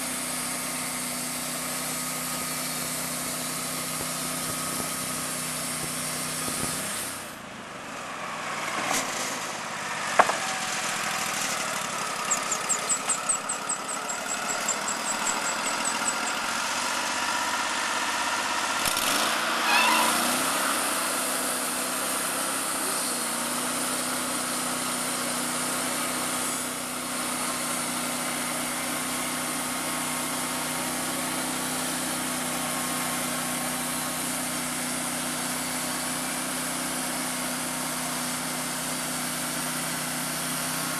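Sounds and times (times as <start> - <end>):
sawmill engine running: 0.0 - 40.9
quick ticks: 12.3 - 16.4.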